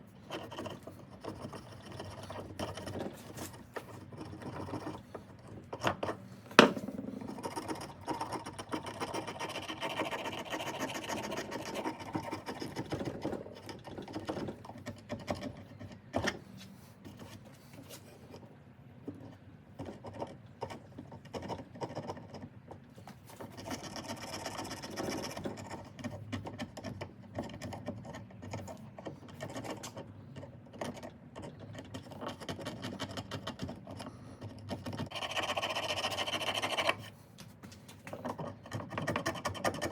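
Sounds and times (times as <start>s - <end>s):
scratching and scraping grip: 0.0s - 18.5s, 19.1s - 39.9s.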